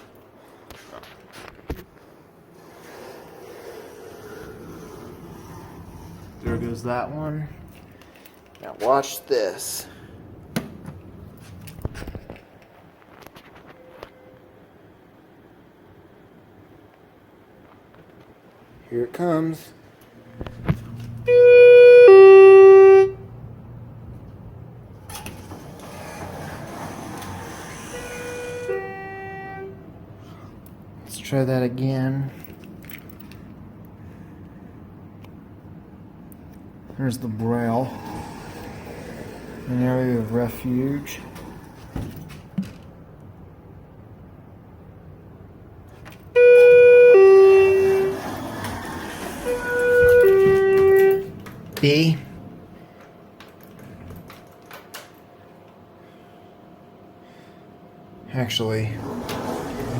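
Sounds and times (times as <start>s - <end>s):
elevator doors sliding open: 2.5s - 7.2s, 23.9s - 29.3s, 37.2s - 43.1s, 45.9s - 52.6s, 58.4s - 59.9s
elevator arrival chime: 21.2s - 23.3s, 27.6s - 29.8s, 46.4s - 48.5s, 49.1s - 51.4s.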